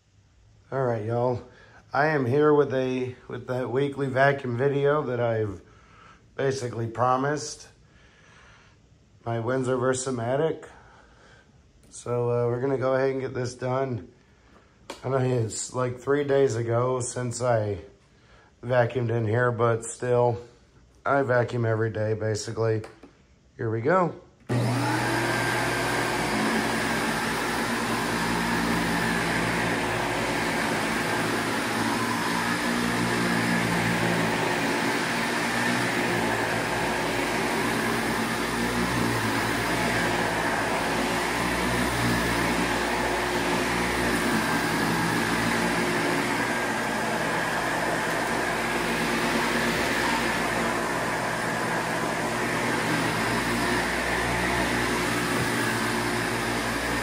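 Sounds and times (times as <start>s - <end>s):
vacuum cleaner running: 0.8s - 5.5s, 24.5s - 57.0s.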